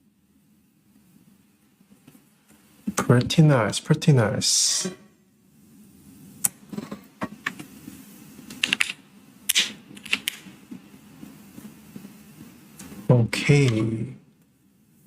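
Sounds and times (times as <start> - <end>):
mechanical keyboard clicks: 8.5 - 10.4.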